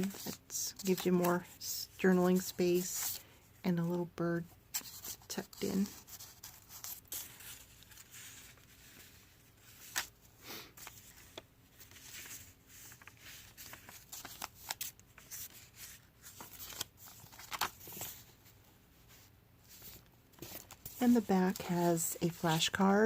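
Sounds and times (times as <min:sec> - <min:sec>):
paper pages rustling: 0:00.0 - 0:03.2, 0:04.7 - 0:22.8.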